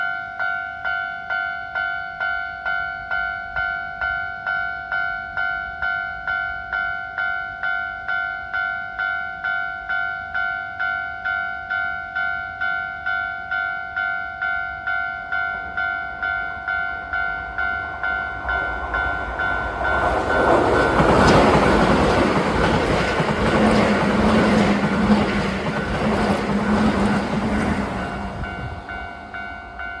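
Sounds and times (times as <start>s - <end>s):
train passing at speed: 16.3s - 30.0s.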